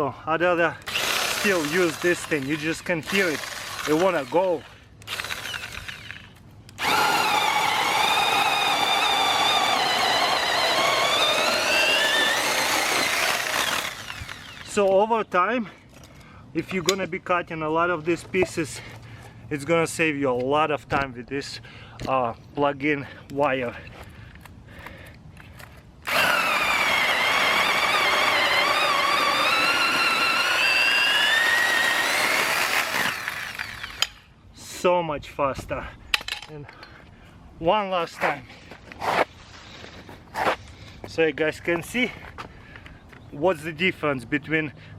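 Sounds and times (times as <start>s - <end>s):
electric chainsaw cutting wood: 0.8s - 14.8s, 26.0s - 34.2s.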